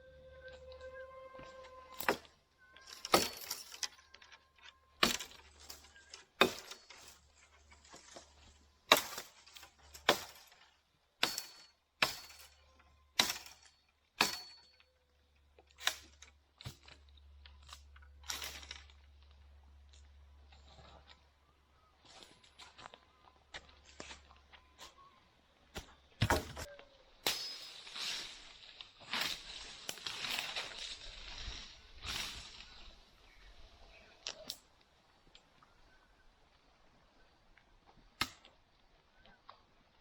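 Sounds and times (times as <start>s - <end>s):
chopping wood with blade: 5.0s - 5.4s, 6.4s - 6.8s, 11.2s - 12.4s, 13.2s - 13.6s, 14.2s - 14.6s, 38.2s - 38.5s.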